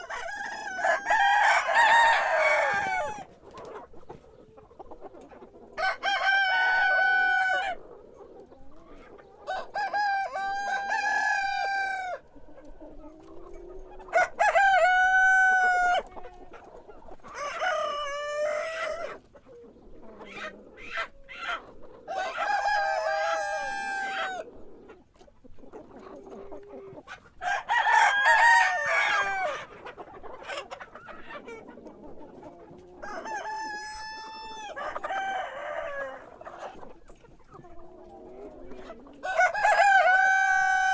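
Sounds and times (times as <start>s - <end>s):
rooster crowing: 0.0s - 3.2s, 5.8s - 7.8s, 14.1s - 16.0s, 27.4s - 29.6s, 39.2s - 40.9s.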